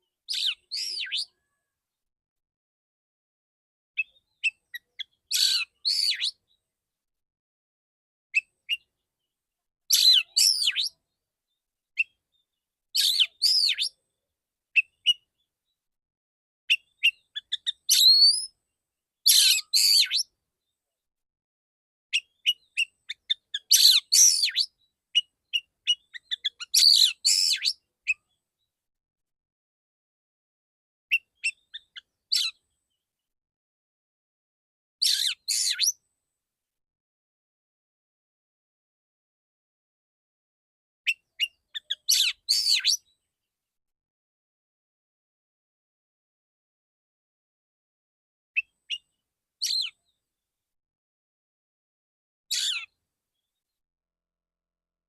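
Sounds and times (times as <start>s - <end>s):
bird singing whistles and chatter: 0.3s - 1.4s, 4.0s - 6.4s, 9.9s - 11.0s, 13.0s - 14.0s, 16.7s - 18.6s, 19.3s - 20.3s, 22.2s - 28.2s, 31.1s - 32.6s, 35.0s - 36.0s, 41.1s - 43.1s, 49.6s - 50.0s, 52.5s - 52.9s.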